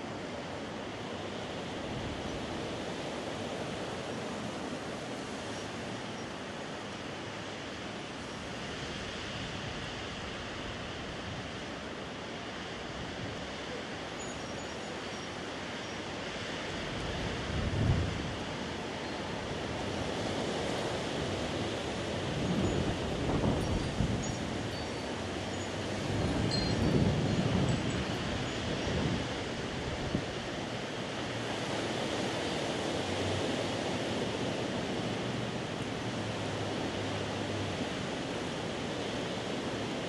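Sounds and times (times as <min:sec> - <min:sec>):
wind gust buffeting microphone: 0:16.8 - 0:18.7, 0:22.2 - 0:30.6.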